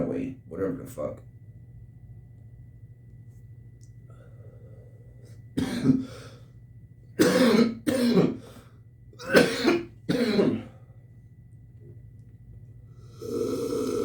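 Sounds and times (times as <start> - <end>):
man coughing: 5.6 - 6.0, 7.2 - 8.4, 9.2 - 10.7.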